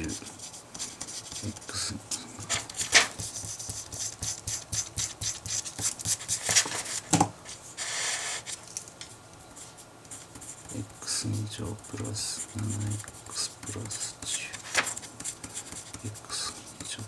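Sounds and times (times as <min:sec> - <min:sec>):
pen scratching on paper: 0:02.8 - 0:06.7, 0:10.1 - 0:16.9.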